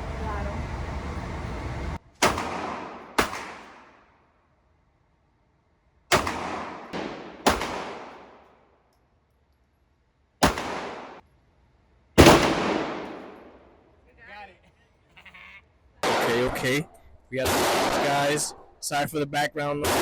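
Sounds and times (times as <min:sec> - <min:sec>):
steady background noise: 0:00.0 - 0:04.0, 0:09.4 - 0:20.0
pistol shots: 0:02.2 - 0:04.1, 0:06.1 - 0:08.5, 0:10.4 - 0:11.2, 0:12.2 - 0:13.7, 0:16.0 - 0:16.8, 0:17.4 - 0:18.7, 0:19.8 - 0:20.0.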